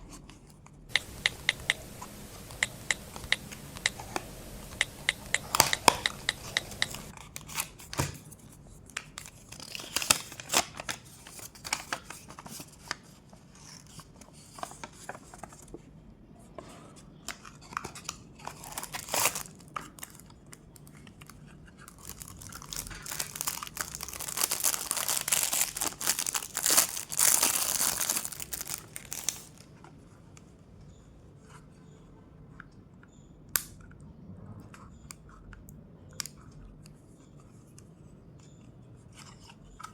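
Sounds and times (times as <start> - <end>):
light taps and clicks: 0.9 - 7.1
packaging crinkling and tearing: 9.1 - 12.6, 18.5 - 20.2, 21.8 - 29.7.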